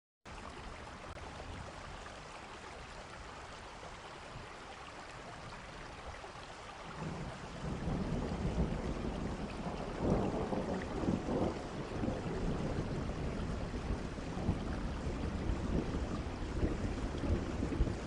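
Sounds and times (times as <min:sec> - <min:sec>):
steady rain: 0:00.3 - 0:18.0
thunder rumble: 0:07.0 - 0:18.0.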